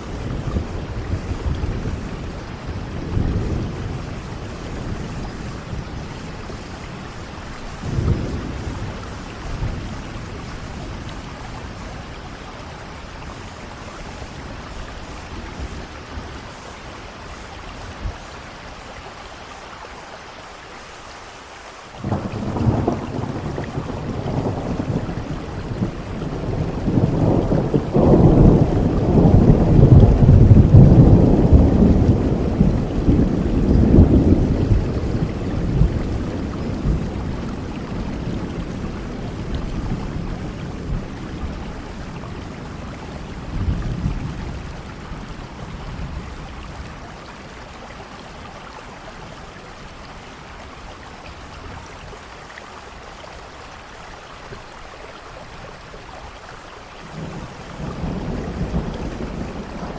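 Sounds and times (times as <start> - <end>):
thunder rumbling: 0.0 - 18.3, 22.0 - 48.1, 57.0 - 59.9
steady rain: 0.0 - 59.9
loud thunderclap: 7.9 - 10.0, 22.0 - 41.6, 57.1 - 59.9.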